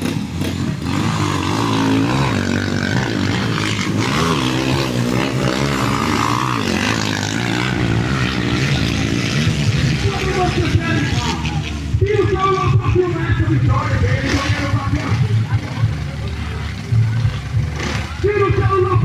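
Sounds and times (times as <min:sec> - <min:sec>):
motorcycle engines racing: 0:00.0 - 0:19.0.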